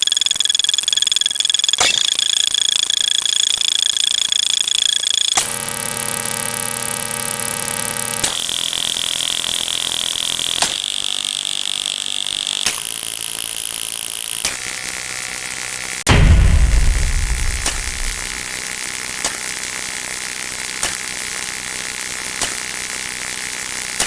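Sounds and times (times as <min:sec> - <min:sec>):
buzzing tone: 0:16.1 - 0:18.4
click between sound effects: 0:16.1 - 0:18.4
high steady tones and hums: 0:16.1 - 0:18.4
loud low rumble: 0:16.1 - 0:18.4.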